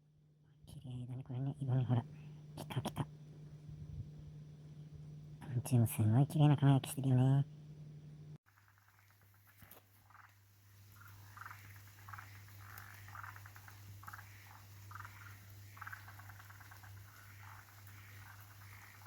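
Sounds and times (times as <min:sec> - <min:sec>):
steady low hum: 0:00.0 - 0:19.0
frogs trilling: 0:08.5 - 0:19.0.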